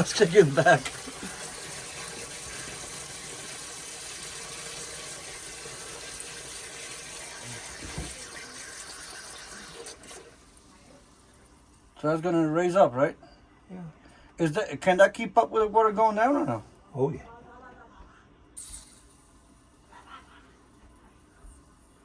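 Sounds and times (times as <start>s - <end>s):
water pouring into pit: 0.0s - 10.5s.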